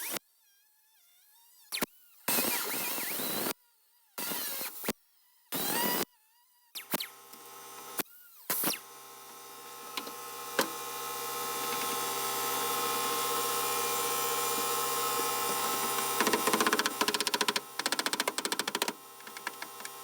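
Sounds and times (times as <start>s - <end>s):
power tool motor running: 6.8s - 20.0s.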